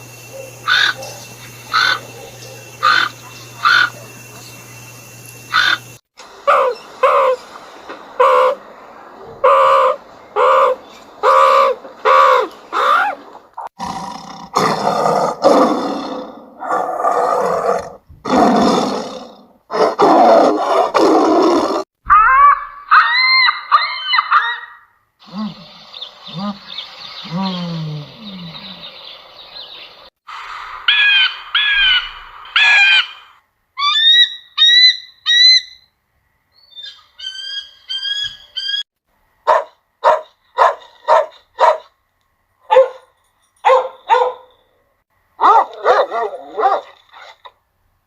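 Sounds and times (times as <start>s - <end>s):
birds calling: 0.0s - 13.3s, 22.3s - 30.1s, 30.9s - 35.9s, 36.5s - 38.9s.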